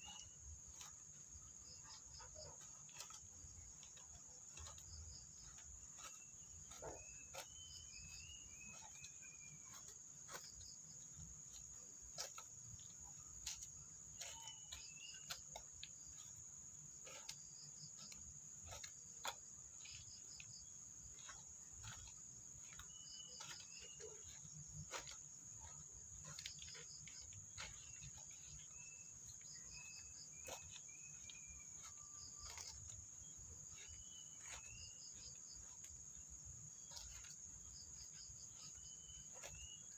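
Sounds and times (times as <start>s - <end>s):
high-pitched insect chorus: 22.6s - 39.9s.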